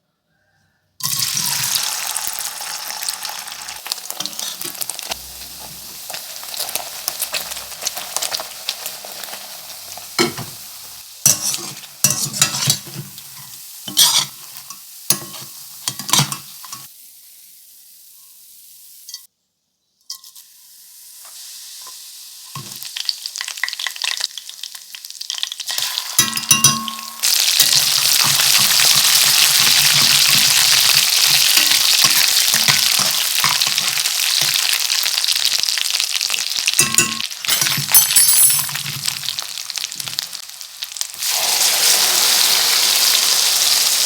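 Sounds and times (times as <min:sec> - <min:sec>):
food sizzling in hot oil: 0:01.0 - 0:19.3, 0:20.1 - 0:44.0
spatula stirring and scraping: 0:03.8 - 0:16.9, 0:27.3 - 0:35.0.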